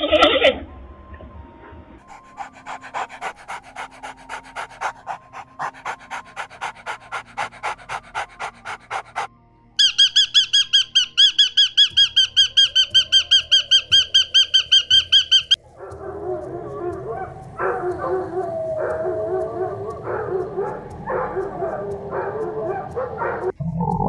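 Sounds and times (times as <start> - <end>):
dog panting rapidly: 2.1 - 9.3, 11.9 - 23.5
high squeaky call: 9.8 - 15.6.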